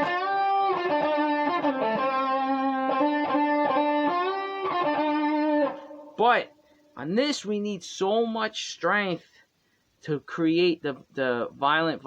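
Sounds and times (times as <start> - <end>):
blues guitar picked notes: 0.0 - 6.6.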